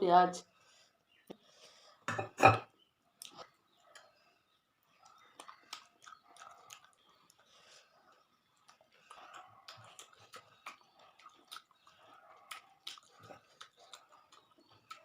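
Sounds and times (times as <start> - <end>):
person chewing with wet clicks: 3.1 - 15.0.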